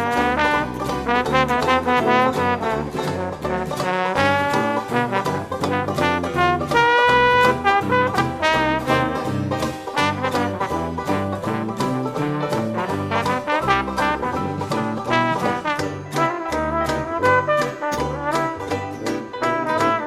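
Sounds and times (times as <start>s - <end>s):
jazz music with brass lead: 0.0s - 20.0s.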